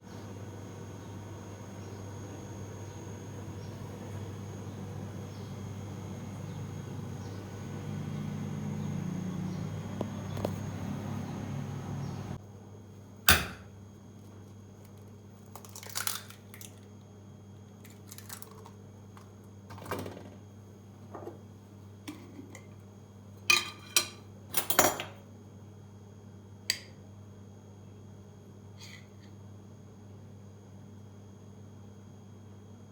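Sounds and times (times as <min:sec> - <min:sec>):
faint steady hum: 0:00.0 - 0:32.9
dishes and utensils clinking: 0:23.5 - 0:25.2.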